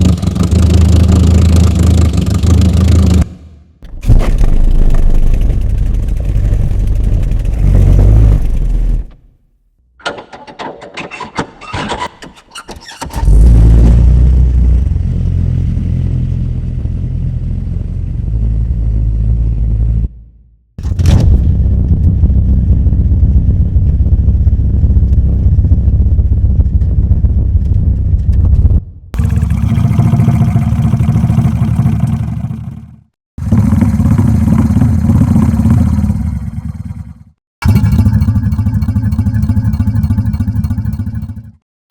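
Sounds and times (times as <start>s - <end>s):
car engine running: 3.9s - 9.3s, 21.2s - 32.9s, 37.6s - 41.6s
car engine starting and idling: 3.9s - 9.4s.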